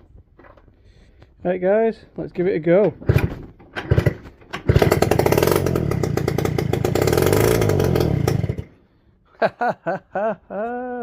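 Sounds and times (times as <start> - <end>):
scooter engine starting and running: 2.9 - 8.8.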